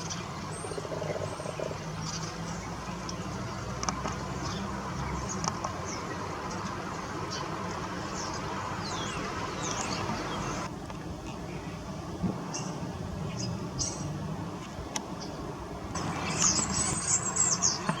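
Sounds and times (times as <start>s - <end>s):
bird chirps: 16.0s - 18.0s.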